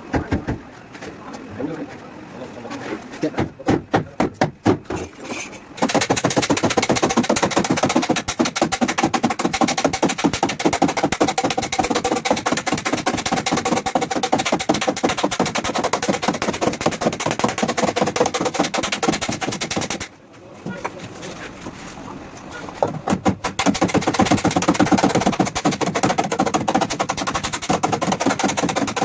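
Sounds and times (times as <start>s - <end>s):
hammering on sheet metal: 5.8s - 20.1s, 22.8s - 29.0s.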